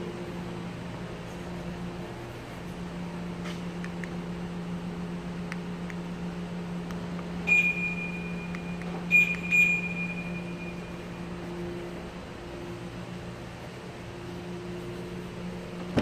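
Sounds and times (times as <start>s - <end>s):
steady low hum: 0.0s - 16.0s
high electronic chimes: 9.1s - 11.0s.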